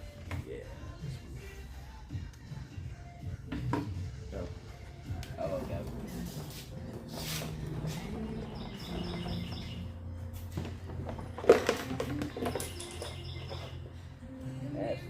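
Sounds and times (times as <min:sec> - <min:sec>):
faint background music: 0:00.0 - 0:15.0
bird chirping: 0:07.7 - 0:10.1, 0:12.2 - 0:14.1.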